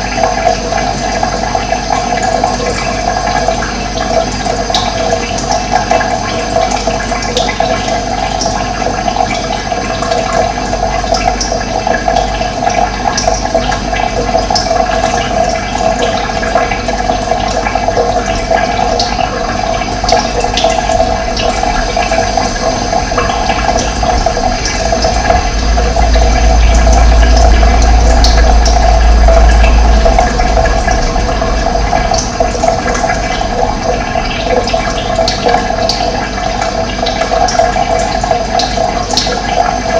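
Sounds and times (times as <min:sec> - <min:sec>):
running water rushing: 0:00.0 - 0:39.9
deep rumble: 0:17.6 - 0:37.5.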